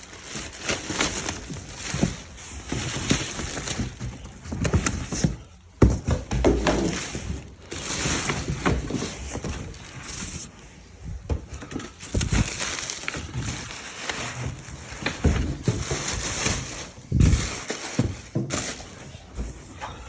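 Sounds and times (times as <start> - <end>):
rustling: 0.0 - 19.8
knocks and thumps: 3.7 - 7.4.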